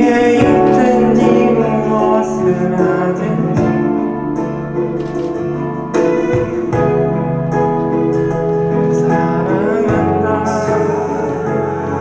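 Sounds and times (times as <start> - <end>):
person singing: 0.0 - 4.2, 8.6 - 12.0.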